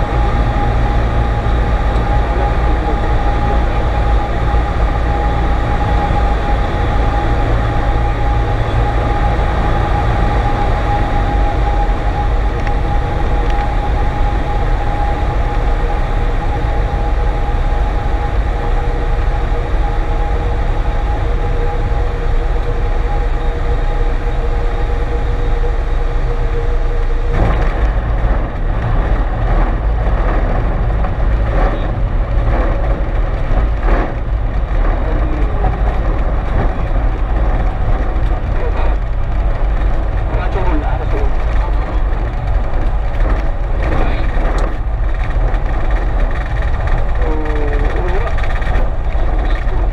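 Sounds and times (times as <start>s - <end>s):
aircraft engine and propeller droning: 0.0s - 49.9s
steady whine: 0.0s - 49.9s
wheels bumping and rattling on runway: 0.0s - 49.9s.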